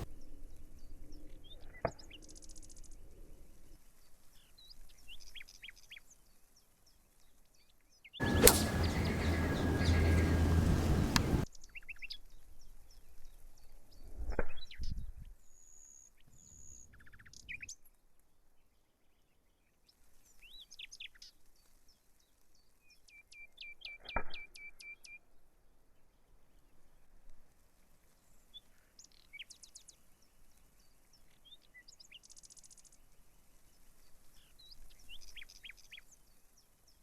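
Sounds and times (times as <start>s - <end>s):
dull thumps: 8.2s - 11.4s
loud rushing noise: 8.2s - 11.4s
songbirds chirping: 8.2s - 11.4s.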